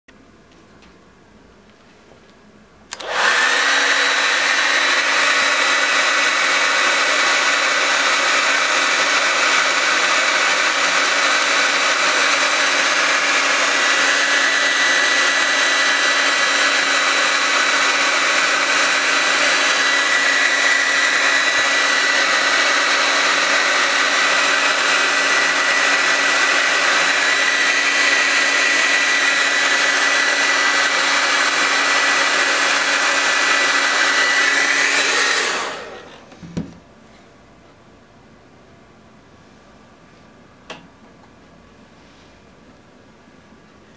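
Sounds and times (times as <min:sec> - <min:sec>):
hair dryer running: 0:02.9 - 0:36.8.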